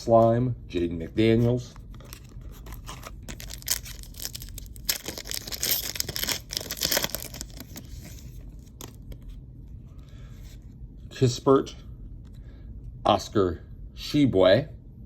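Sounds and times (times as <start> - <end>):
cards being handled: 1.4 - 9.3
foil wrapper tearing and crinkling: 2.1 - 9.0.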